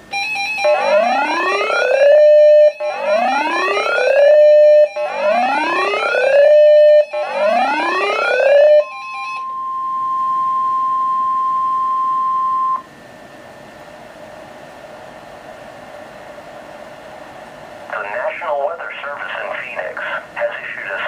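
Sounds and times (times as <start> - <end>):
steady alarm tone: 0.0 - 13.0
faint radio hiss: 12.8 - 21.0.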